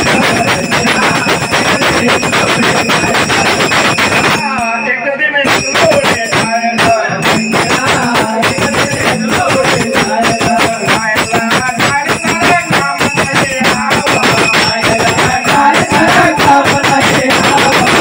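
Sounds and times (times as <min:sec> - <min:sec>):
jingling cymbals: 0:00.0 - 0:18.0
wavering melody line: 0:09.1 - 0:18.0.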